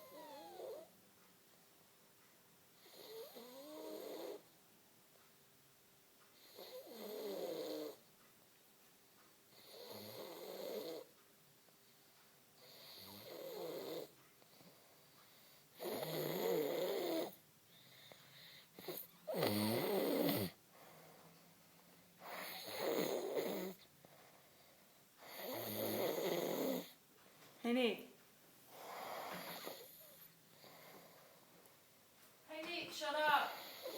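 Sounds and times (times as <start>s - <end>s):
person snoring: 18.8s - 20.6s.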